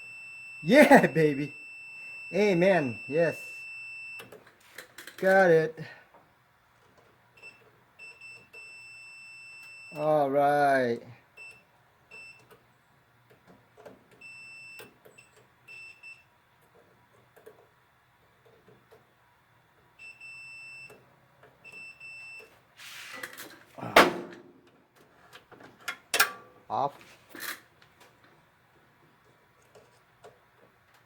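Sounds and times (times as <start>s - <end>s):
multimeter continuity beeps: 0.0s - 4.4s, 7.4s - 10.2s, 11.4s - 12.5s, 14.2s - 16.3s, 20.0s - 21.0s, 21.6s - 22.6s.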